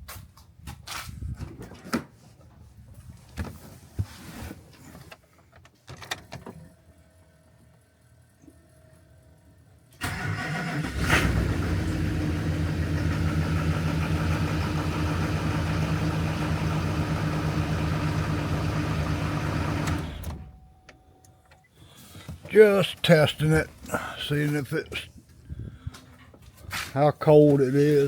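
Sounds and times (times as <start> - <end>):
engine starting and idling: 10.0 - 20.7.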